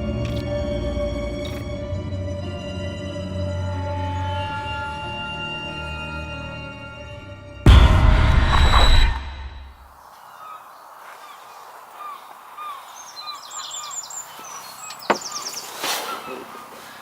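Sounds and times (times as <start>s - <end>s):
bird chirping: 9.9s - 17.0s
bird song phrase: 10.2s - 17.0s.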